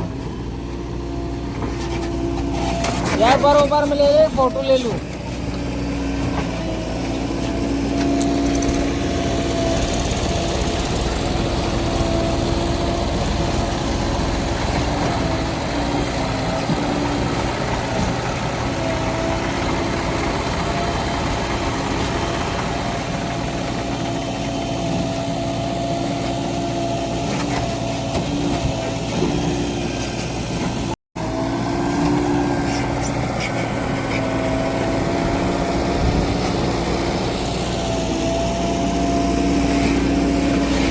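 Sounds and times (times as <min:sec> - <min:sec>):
diesel engine running under load: 0:00.0 - 0:40.9.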